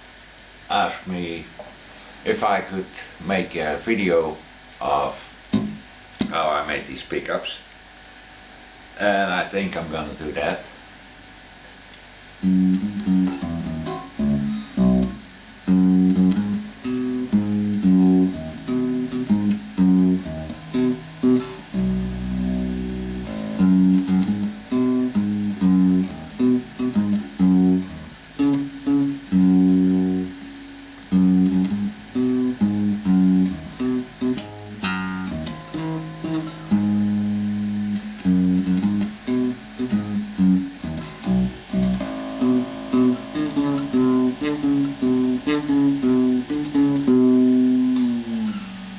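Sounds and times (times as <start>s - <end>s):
electric guitar playing: 12.3s - 48.9s.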